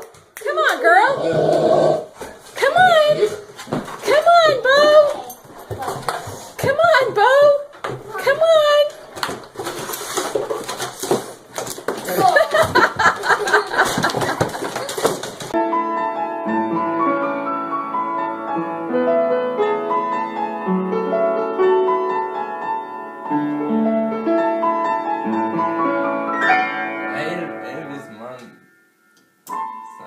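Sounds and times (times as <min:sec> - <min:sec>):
slow piano melody: 0:15.5 - 0:30.0.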